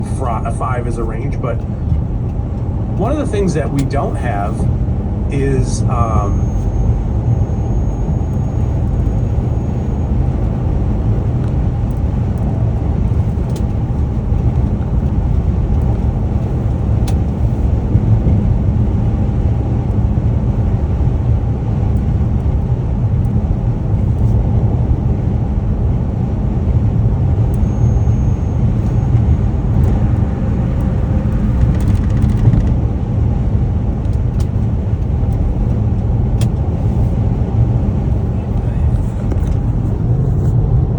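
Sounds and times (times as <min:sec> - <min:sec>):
road and drivetrain rumble: 0:00.0 - 0:40.9
air conditioning whistling noise: 0:02.8 - 0:11.9, 0:26.8 - 0:33.7.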